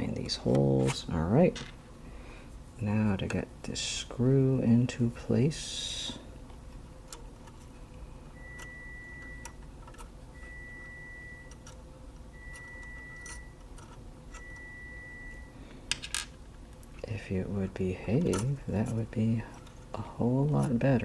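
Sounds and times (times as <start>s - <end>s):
long electronic beeps: 10.4s - 11.6s, 12.3s - 13.6s, 14.4s - 15.6s.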